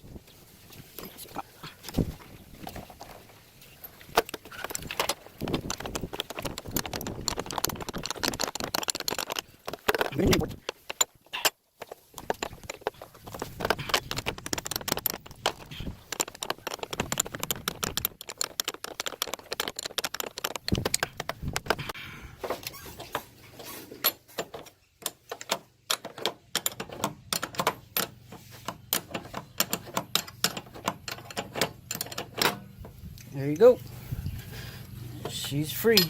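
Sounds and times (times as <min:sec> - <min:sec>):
metallic clicking of hand tools: 0:03.9 - 0:22.0, 0:24.0 - 0:33.8, 0:35.2 - 0:36.0.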